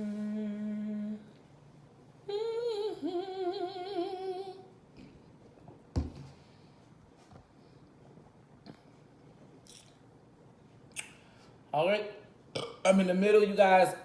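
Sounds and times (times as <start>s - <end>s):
woman's wavering throat vocal: 0.0s - 1.4s, 2.2s - 4.7s.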